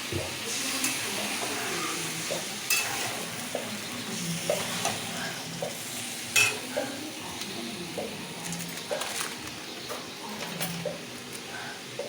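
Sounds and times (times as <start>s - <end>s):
food sizzling in a pan: 0.0s - 9.0s.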